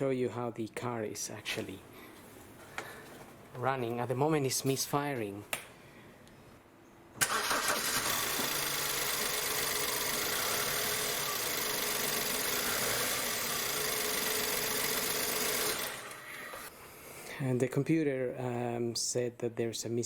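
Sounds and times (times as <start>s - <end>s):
misfiring car engine idling: 7.3s - 16.2s.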